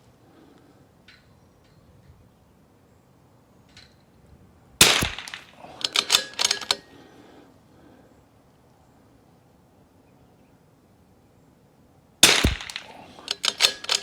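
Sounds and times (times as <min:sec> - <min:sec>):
rifle shot: 0:04.8 - 0:06.8, 0:12.2 - 0:14.0
rifle bolt clicks: 0:04.8 - 0:06.9, 0:12.2 - 0:14.0.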